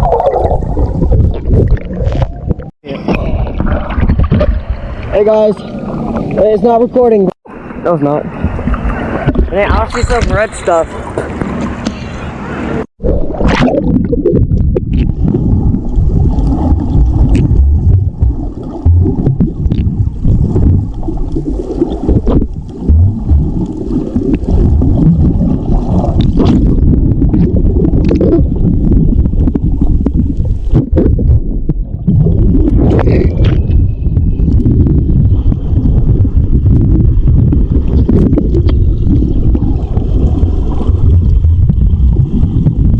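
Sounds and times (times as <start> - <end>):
water splashes: 0.0 - 42.9
muffled underwater gurgling: 13.0 - 42.9.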